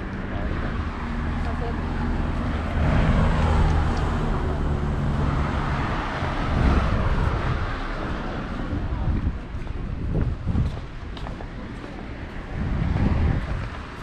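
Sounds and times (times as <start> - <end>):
vehicle passing: 0.0 - 10.4
vehicle engine humming: 0.0 - 14.0.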